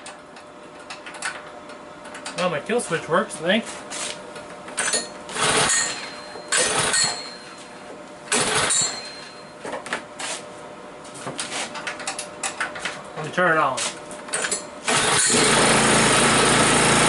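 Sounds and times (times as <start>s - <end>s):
engine turning over: 5.4s - 5.8s, 6.6s - 7.2s, 8.3s - 8.9s, 14.9s - 17.0s
recoil starter pulls: 14.9s - 17.0s.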